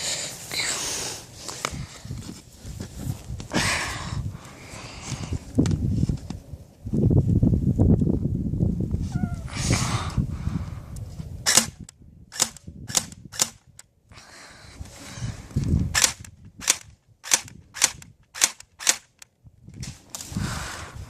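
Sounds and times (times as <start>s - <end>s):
airsoft gun shots: 11.5s - 13.6s, 16.0s - 19.2s.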